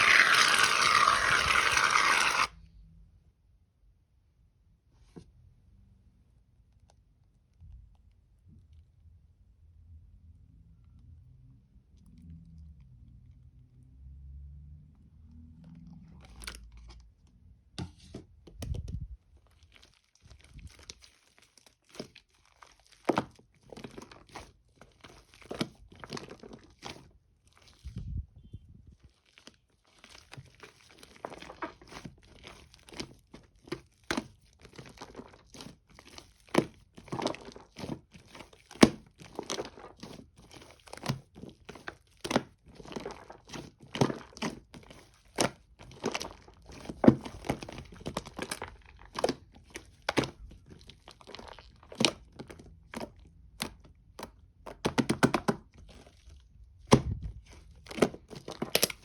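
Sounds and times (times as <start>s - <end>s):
foam slime crackling and popping: 0.0s - 2.5s, 29.1s - 53.8s, 54.7s - 59.0s.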